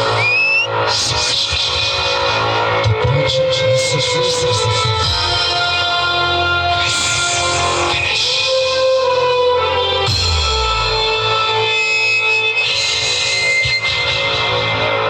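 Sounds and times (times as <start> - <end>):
bass line: 9.9 - 11.8
electric guitar melody: 10.0 - 11.8.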